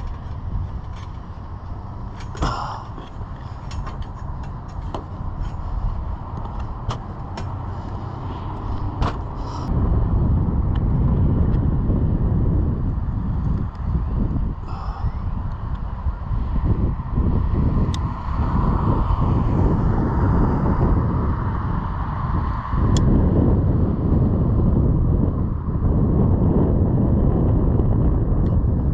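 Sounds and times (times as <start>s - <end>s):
low outdoor rumble: 0.0s - 28.9s
small clicks and knocks: 2.1s - 5.6s.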